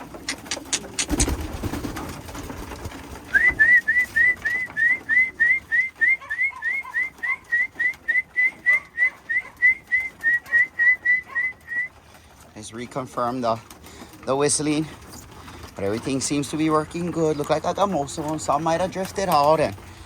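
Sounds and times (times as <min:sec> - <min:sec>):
person whistling short rising notes: 0:03.3 - 0:11.9.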